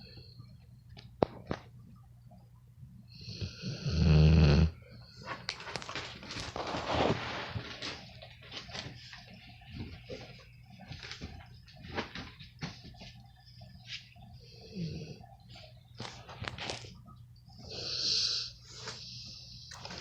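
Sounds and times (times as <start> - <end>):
dog snoring: 3.2 - 4.8, 14.5 - 15.4, 17.6 - 18.5.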